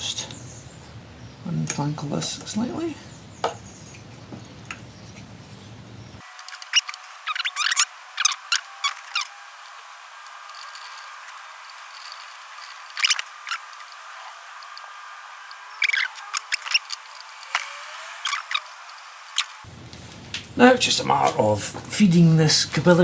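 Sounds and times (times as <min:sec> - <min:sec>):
small clicks handling parts: 0:06.2 - 0:19.6.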